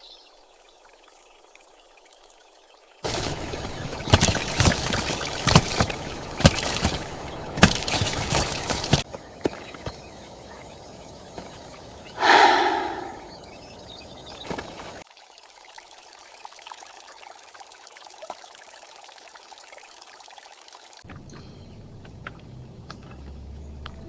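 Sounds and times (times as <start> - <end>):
steady rain with drips: 0.0 - 9.1, 14.0 - 24.0
loud breathy sigh: 12.2 - 13.4.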